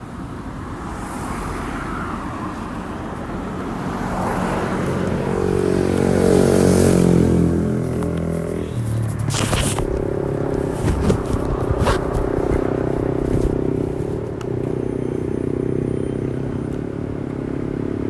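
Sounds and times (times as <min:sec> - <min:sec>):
motorcycle exhaust while riding: 0:04.4 - 0:18.0.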